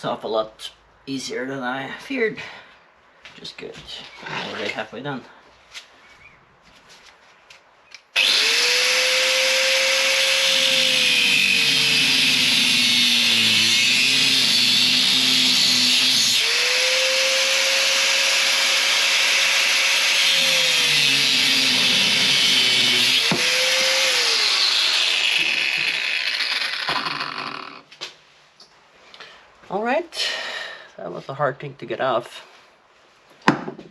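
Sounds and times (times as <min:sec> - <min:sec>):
angle grinder cutting steel: 0:08.2 - 0:27.9.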